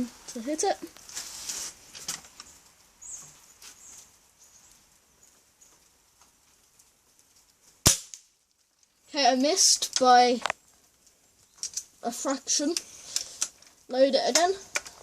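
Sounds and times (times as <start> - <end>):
airsoft rifle shot: 7.8 - 8.2.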